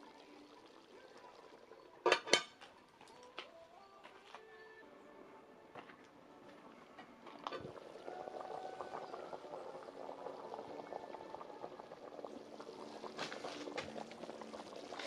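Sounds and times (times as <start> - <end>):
pot bubbling: 0.0 - 3.3, 7.2 - 15.0.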